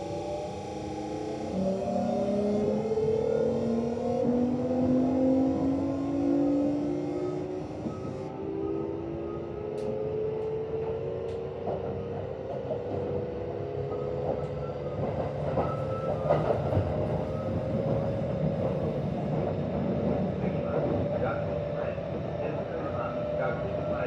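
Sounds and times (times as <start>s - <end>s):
train running rumble: 10.7s - 24.0s.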